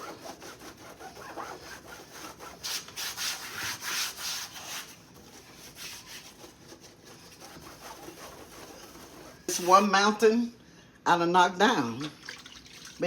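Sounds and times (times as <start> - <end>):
cloth scrubbing a surface: 0.0 - 10.0.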